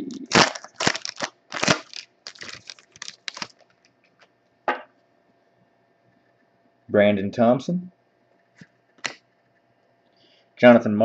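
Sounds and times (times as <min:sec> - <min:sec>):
foil wrapper tearing and crinkling: 0:00.0 - 0:03.9.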